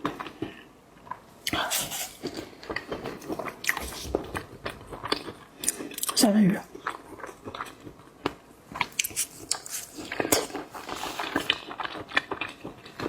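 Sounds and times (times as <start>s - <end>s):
wet chewing mouth clicks: 1.4s - 6.2s, 8.8s - 13.0s.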